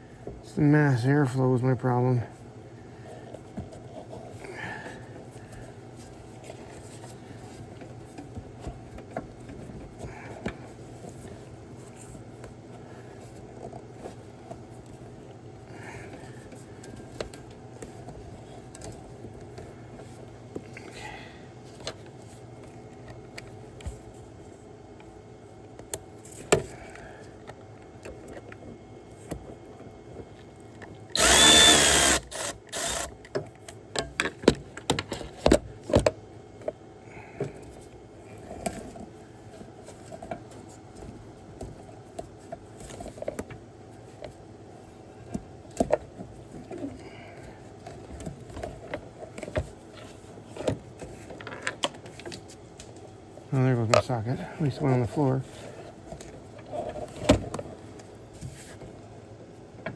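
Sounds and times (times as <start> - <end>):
steady low hum: 14.8 - 33.6
power drill whining: 31.2 - 33.1.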